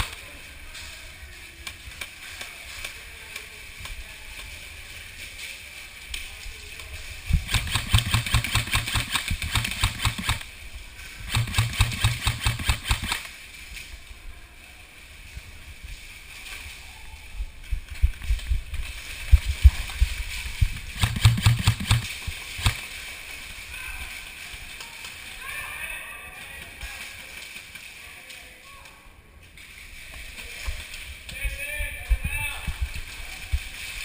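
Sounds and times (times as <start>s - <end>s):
airsoft rifle full-auto bursts: 7.4s - 10.5s, 11.3s - 13.3s, 21.0s - 22.8s.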